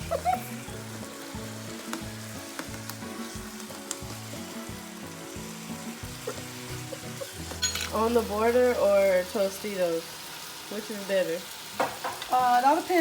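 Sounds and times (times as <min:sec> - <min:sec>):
background music with bass: 0:00.0 - 0:08.8
meat sizzling in a pan: 0:00.0 - 0:13.0.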